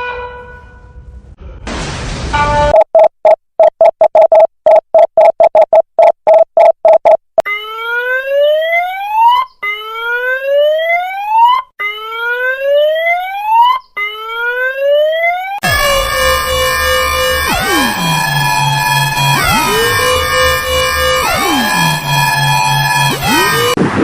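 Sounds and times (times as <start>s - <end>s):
fast electronic beeps: 2.8s - 7.2s, 15.6s - 23.8s
rising whoop alarm: 15.7s - 23.8s.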